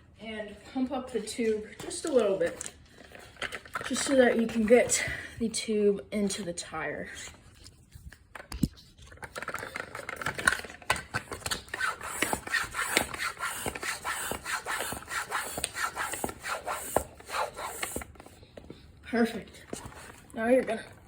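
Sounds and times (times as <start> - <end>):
bicycle pump hissing: 11.7 - 18.1.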